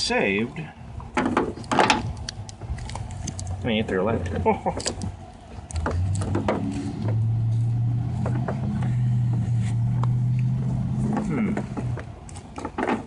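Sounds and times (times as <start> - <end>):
vehicle engine humming: 0.0 - 13.0
plastic parts clicking: 4.2 - 5.1.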